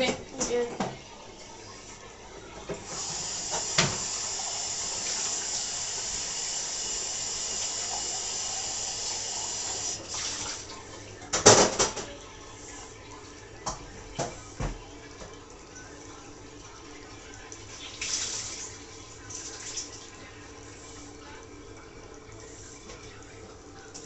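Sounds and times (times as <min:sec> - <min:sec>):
tap running into sink: 0:00.0 - 0:01.0, 0:02.5 - 0:10.6, 0:13.6 - 0:15.4.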